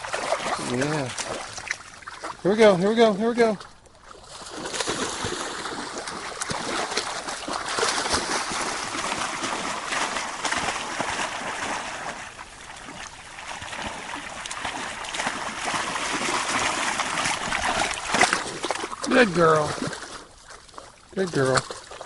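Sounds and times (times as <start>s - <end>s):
puppies splashing through water: 0.0s - 22.0s.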